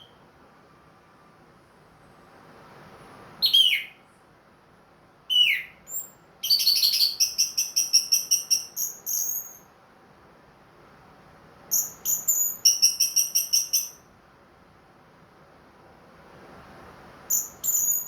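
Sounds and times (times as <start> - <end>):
thrush singing whistled notes: 3.4 - 4.0, 5.3 - 9.7, 11.7 - 14.1, 17.3 - 18.0.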